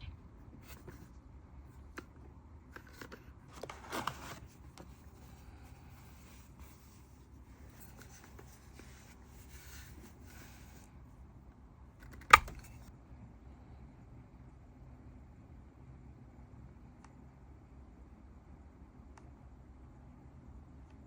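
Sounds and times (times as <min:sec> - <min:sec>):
rustling scrape: 0:02.9 - 0:10.9
packaging handling clicks and rubbing: 0:12.0 - 0:12.9.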